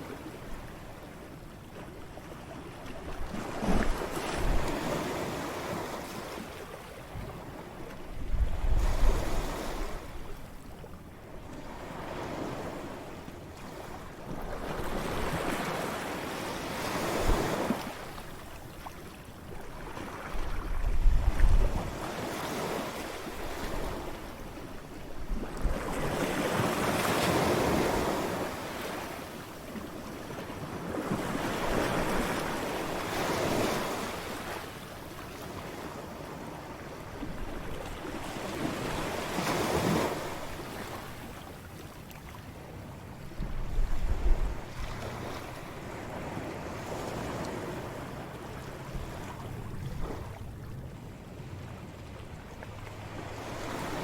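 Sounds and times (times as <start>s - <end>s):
ocean waves breaking: 0.0s - 54.0s.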